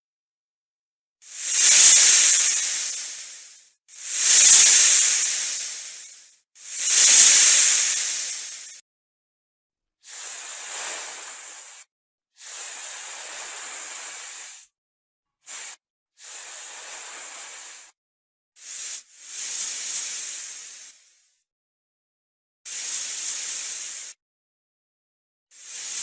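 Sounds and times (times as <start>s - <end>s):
snake hissing: 1.2s - 8.8s, 10.1s - 14.7s, 15.5s - 18.0s, 18.6s - 21.3s, 22.7s - 24.2s, 25.5s - 26.0s.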